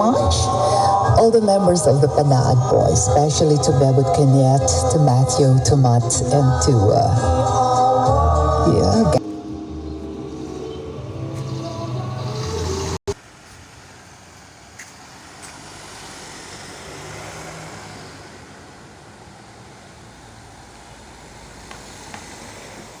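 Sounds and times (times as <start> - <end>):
road traffic noise: 0.0 - 8.0, 8.9 - 23.0
vehicle engine passing: 15.0 - 23.0.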